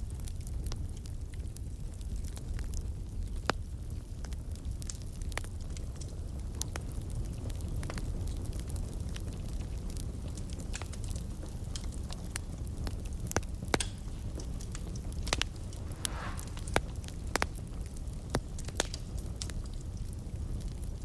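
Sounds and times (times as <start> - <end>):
fire crackling and popping: 0.0 - 21.0
wood fire roaring: 0.1 - 21.0
fire hissing: 15.0 - 17.6.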